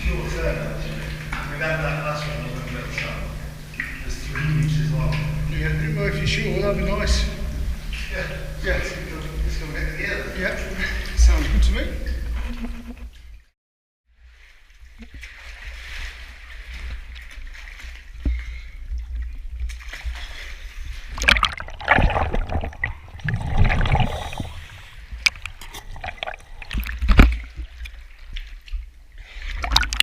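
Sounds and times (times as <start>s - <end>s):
low rumble: 0.0s - 13.1s, 21.2s - 27.5s
water splashing and sloshing: 0.0s - 13.5s, 14.1s - 30.0s.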